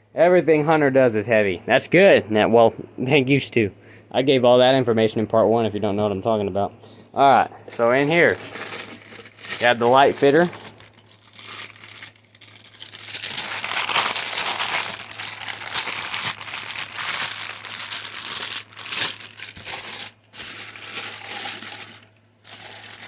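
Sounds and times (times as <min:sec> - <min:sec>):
plastic packaging crinkling: 0:07.7 - 0:23.0.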